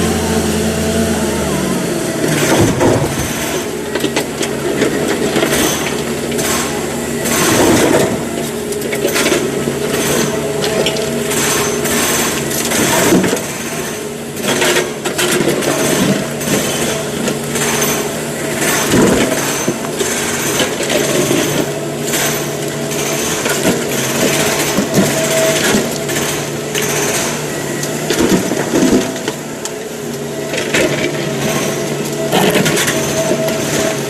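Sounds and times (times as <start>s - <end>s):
excavator diesel engine running: 0.0s - 34.0s.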